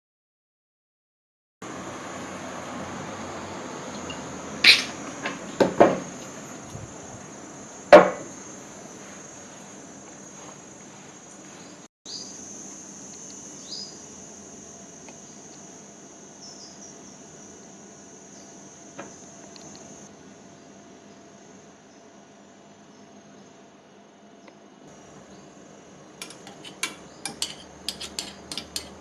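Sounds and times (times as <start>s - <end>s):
sharp knocks and clinks: 26.2s - 29.0s.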